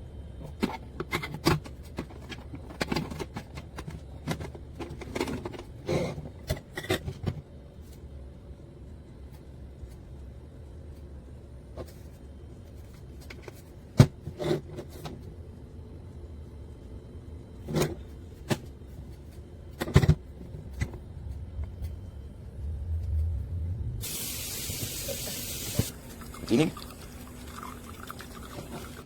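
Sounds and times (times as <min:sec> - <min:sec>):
low steady hum: 0:00.0 - 0:29.0
water running hiss: 0:24.0 - 0:29.0.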